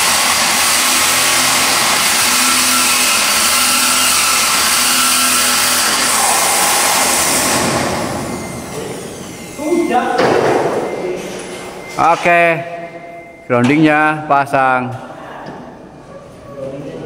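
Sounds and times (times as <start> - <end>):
power drill drilling into wall: 0.0 - 9.6.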